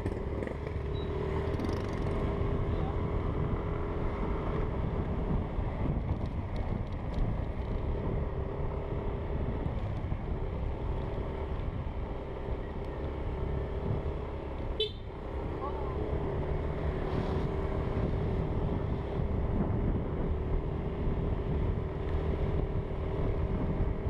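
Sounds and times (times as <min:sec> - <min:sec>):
scooter engine running: 0:00.0 - 0:03.5
wind buffeting microphone: 0:02.6 - 0:10.9, 0:17.0 - 0:24.0.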